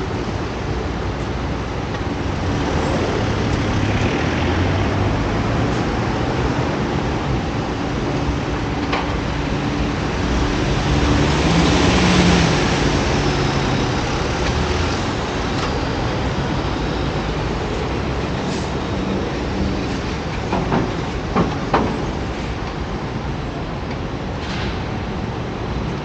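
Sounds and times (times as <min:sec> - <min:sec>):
road traffic: 0:00.0 - 0:26.0
vehicle passing: 0:02.2 - 0:07.2, 0:09.9 - 0:20.3.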